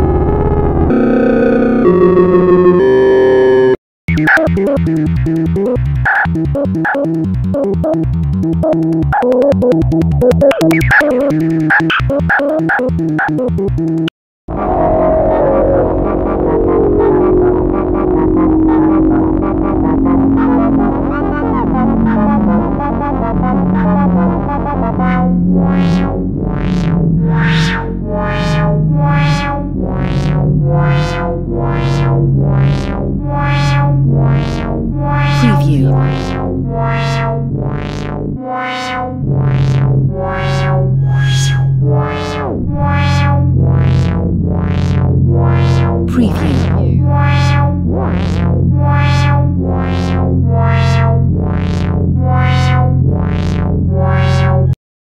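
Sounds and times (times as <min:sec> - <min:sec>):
electronic synthesizer music: 0:00.0 - 0:15.9.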